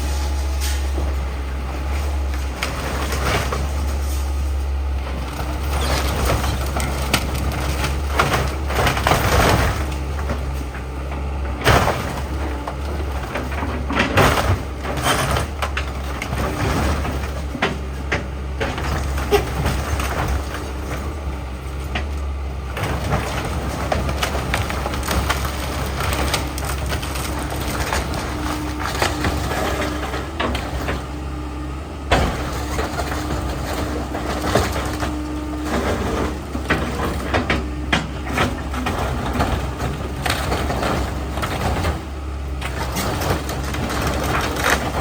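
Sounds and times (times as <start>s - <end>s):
debris crunching and scraping: 0.0s - 45.0s
heavy machine engine drone: 0.0s - 45.0s.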